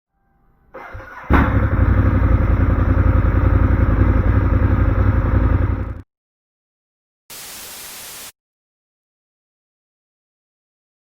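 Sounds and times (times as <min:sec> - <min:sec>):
motorcycle engine running: 0:01.3 - 0:06.0.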